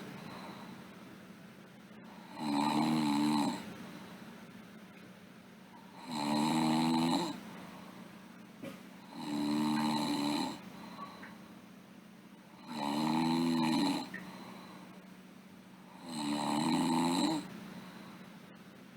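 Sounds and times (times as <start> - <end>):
girl snoring: 2.2 - 3.7, 5.9 - 7.4, 9.0 - 10.6, 12.6 - 14.2, 15.9 - 17.5.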